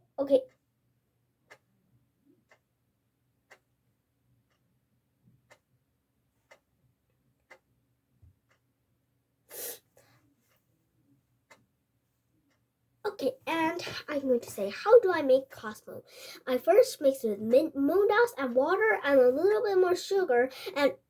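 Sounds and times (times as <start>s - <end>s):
faint clock ticking: 0.0s - 21.0s
short breath: 9.5s - 10.2s, 16.1s - 16.4s.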